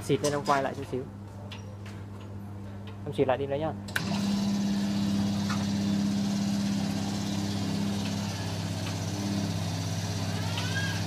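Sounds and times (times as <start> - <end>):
machine electric hum: 2.3 - 11.0.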